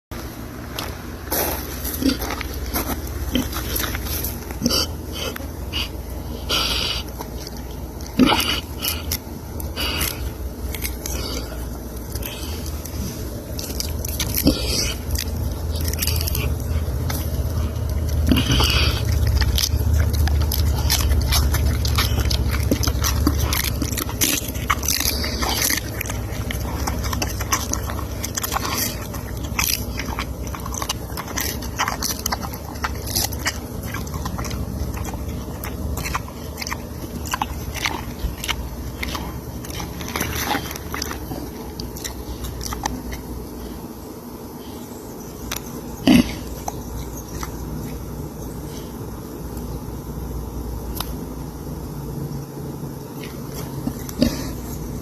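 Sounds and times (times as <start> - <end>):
pig snoring: 2.0 - 7.4, 8.1 - 13.4, 14.2 - 41.6, 46.0 - 46.7, 53.7 - 55.0.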